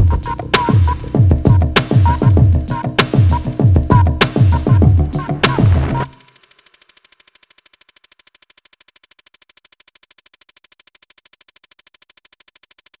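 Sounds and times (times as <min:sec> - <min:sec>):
fast pulsing electronic tone: 0:00.0 - 0:09.8.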